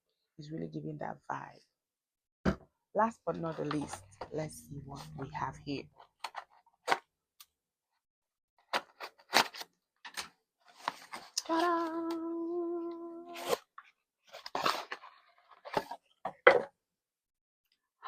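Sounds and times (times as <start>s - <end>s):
person singing ta-da: 11.4s - 13.6s.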